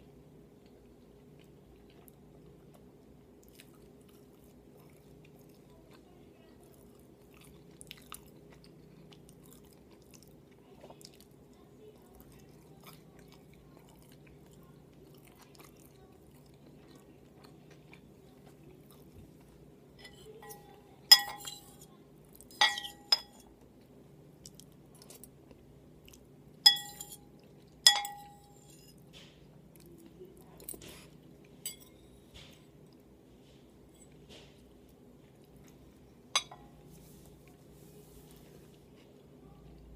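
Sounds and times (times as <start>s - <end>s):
chewing and mouth clicks: 0.6s - 19.6s, 23.8s - 26.3s
utensil clinking against dish: 20.0s - 21.9s, 22.5s - 23.5s, 26.7s - 27.2s, 27.8s - 29.0s, 31.6s - 32.0s, 36.4s - 36.8s.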